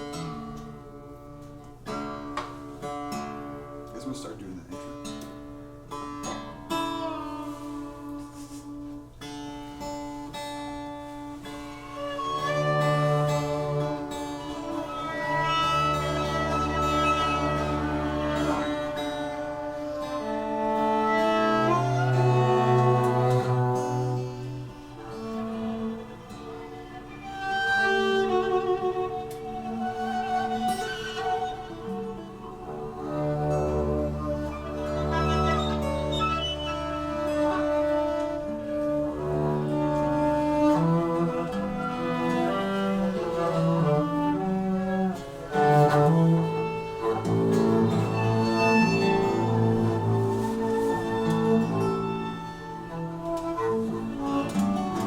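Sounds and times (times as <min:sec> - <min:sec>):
viola holding long notes: 0:11.3 - 0:55.0.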